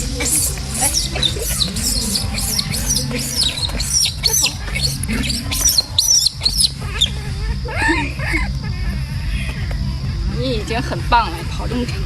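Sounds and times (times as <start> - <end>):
small animal squeaking: 0.0 - 11.9
low hum: 0.0 - 12.0.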